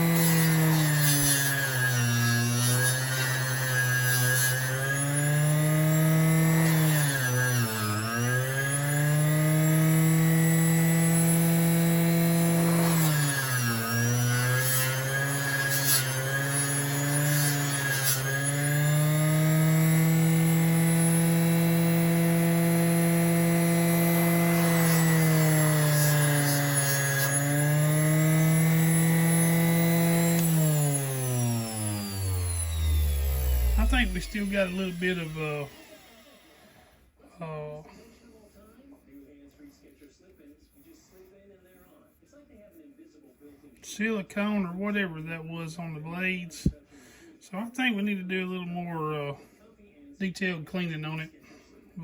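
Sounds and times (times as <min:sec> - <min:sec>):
motor-driven wheel running: 0:07.6 - 0:36.9.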